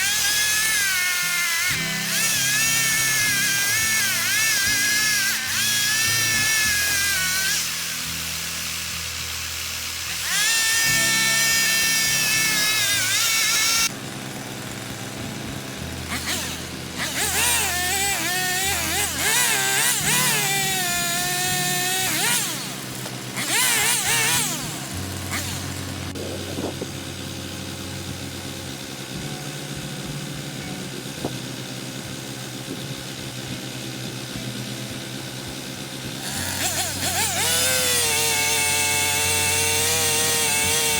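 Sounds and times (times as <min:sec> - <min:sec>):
instrumental music: 0:00.0 - 0:40.9.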